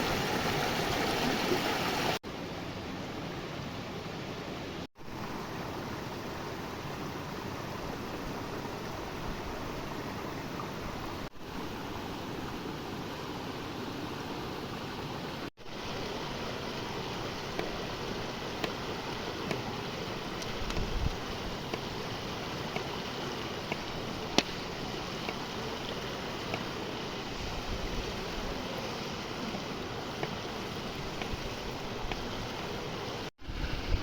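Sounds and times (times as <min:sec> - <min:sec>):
campfire crackling: 0:15.6 - 0:33.3.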